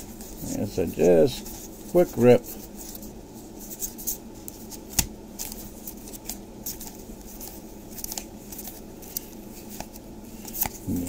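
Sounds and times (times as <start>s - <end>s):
low room hum: 0.0s - 11.0s
trading cards being flipped: 3.6s - 10.8s.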